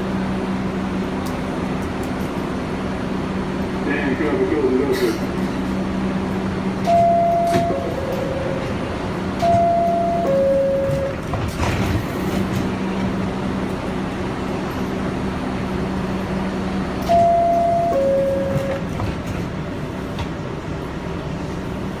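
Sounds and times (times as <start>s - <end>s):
subway car hum: 0.0s - 22.0s
two-note door chime: 6.9s - 8.6s, 9.4s - 11.2s, 17.0s - 18.8s.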